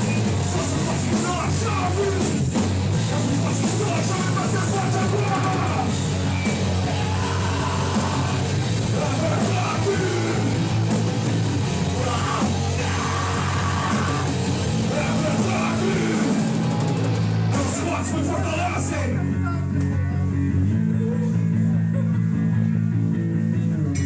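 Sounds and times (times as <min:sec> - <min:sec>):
distorted guitars: 0:00.0 - 0:24.0
drums: 0:00.0 - 0:24.0
shouted vocals: 0:00.6 - 0:02.4, 0:03.2 - 0:06.0, 0:06.6 - 0:10.6, 0:11.8 - 0:19.1.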